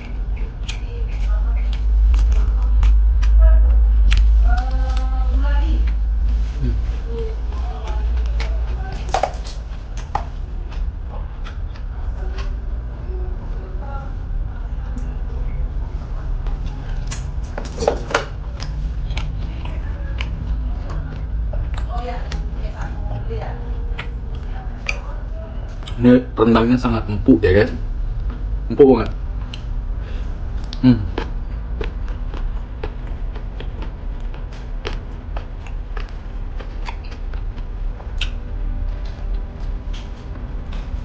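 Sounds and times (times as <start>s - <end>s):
wet chewing mouth clicks: 0.0s - 3.4s, 4.0s - 5.2s, 16.7s - 26.0s, 30.6s - 40.2s
steady low hum: 0.0s - 41.0s.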